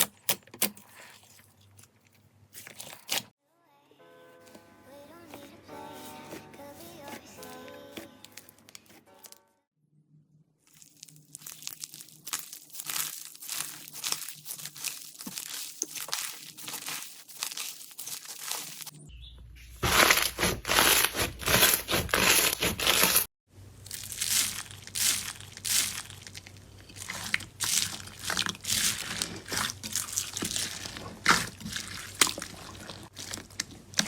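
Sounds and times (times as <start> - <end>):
crunchy slime crackling: 10.7 - 18.9, 19.8 - 34.0.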